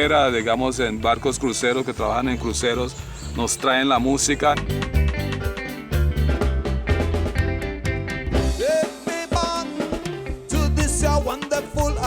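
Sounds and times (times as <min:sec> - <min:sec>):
reggae song with drums and bass: 0:00.0 - 0:12.0
person singing: 0:08.5 - 0:12.0.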